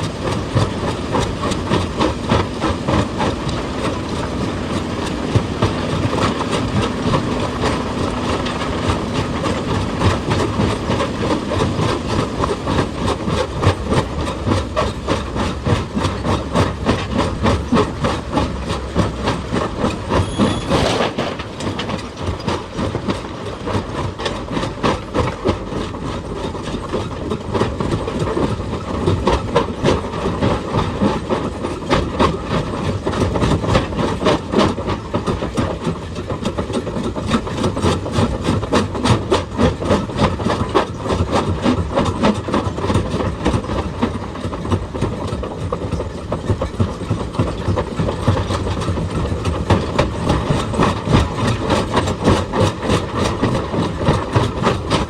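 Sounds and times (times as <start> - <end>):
rapid knocks and scrapes on rock: 0.0 - 55.0
diesel engine running: 12.3 - 25.1
brief sharp high sound: 20.2 - 21.4.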